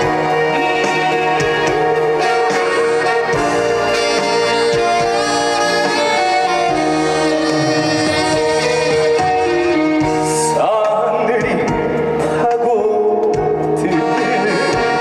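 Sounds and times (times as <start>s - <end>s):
instrumental trot music: 0.0s - 11.6s.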